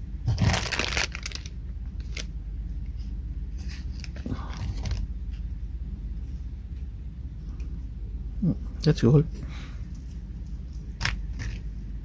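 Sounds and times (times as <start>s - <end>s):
steady low hum: 0.0s - 12.0s
packaging rustling: 0.3s - 2.3s.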